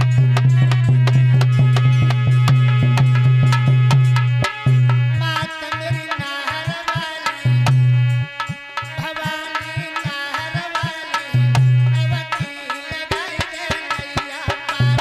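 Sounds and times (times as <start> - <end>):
sustained melody line: 0.0 - 5.5.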